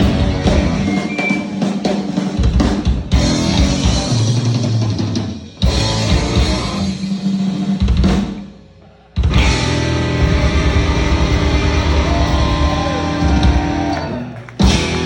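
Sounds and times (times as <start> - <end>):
guitar and bass chords: 0.0 - 1.2, 3.0 - 5.0, 5.6 - 7.4, 9.2 - 15.0
rock drum kit: 0.0 - 15.0.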